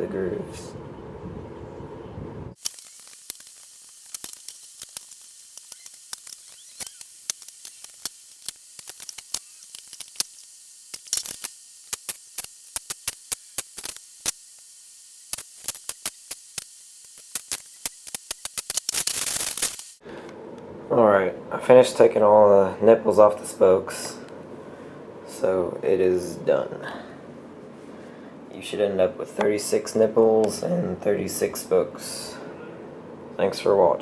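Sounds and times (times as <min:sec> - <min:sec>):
steady hiss: 0:02.5 - 0:20.2.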